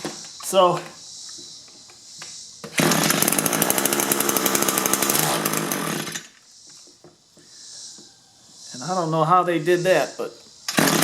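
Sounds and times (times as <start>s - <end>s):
string trimmer engine rattling: 2.7s - 6.3s, 10.7s - 11.0s.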